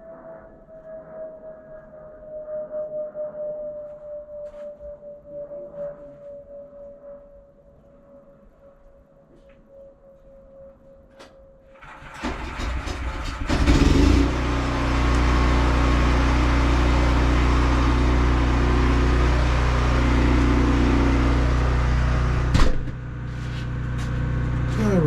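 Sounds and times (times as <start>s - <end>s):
engine cranking and idling: 11.8s - 14.4s.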